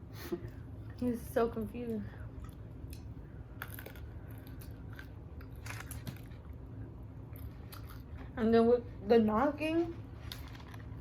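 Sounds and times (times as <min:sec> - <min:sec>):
low steady hum: 0:00.0 - 0:11.0
biting and chewing fried chicken: 0:02.4 - 0:08.3.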